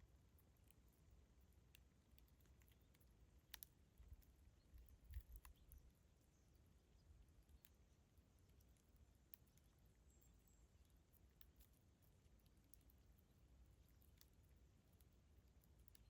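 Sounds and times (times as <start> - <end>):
wood crackling and popping: 3.5 - 5.8.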